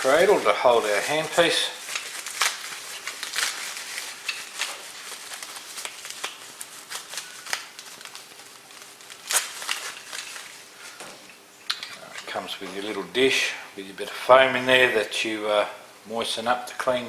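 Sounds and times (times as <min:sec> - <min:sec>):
packaging rustling: 0:00.0 - 0:13.2.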